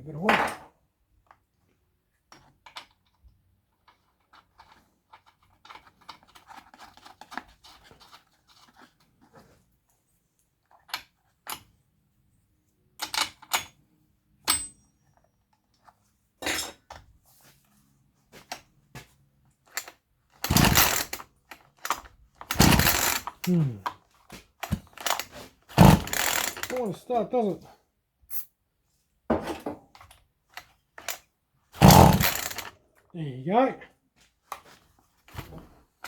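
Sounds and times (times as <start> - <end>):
clicks and knocks of parts: 19.7 - 26.9, 31.8 - 32.7.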